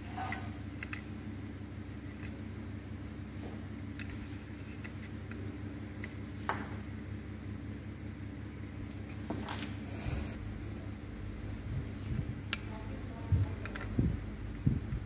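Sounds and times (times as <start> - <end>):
steady low hum: 0.0 - 15.0
metallic clinks of tools: 9.5 - 9.9.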